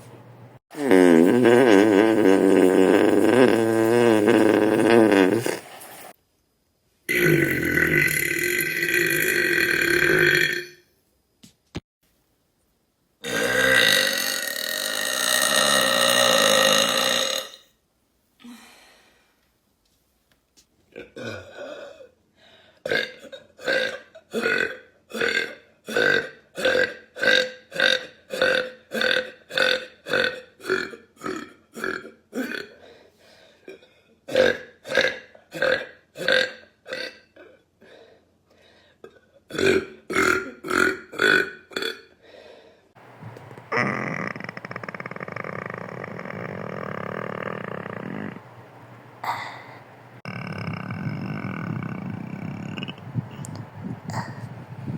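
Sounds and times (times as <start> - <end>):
person burping: 0.7 - 5.6, 7.1 - 10.8, 13.2 - 17.6, 21.0 - 22.1, 22.9 - 32.8, 33.7 - 37.6, 39.0 - 42.1, 43.5 - 48.4, 49.2 - 54.5.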